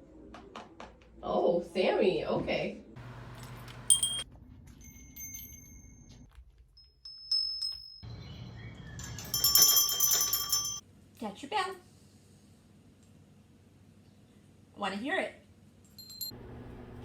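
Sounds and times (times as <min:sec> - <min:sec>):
small bell chiming: 0:03.3 - 0:10.8, 0:15.9 - 0:16.4.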